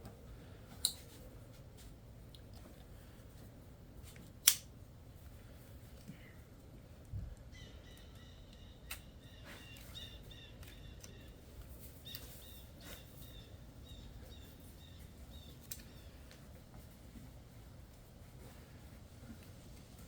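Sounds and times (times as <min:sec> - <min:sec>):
faint bird chirping: 0:07.4 - 0:16.6.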